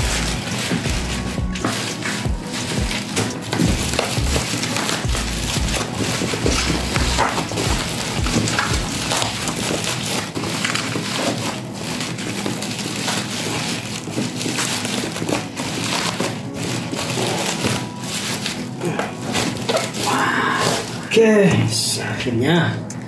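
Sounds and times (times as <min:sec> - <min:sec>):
packaging crackling and crinkling: 0:00.0 - 0:21.2.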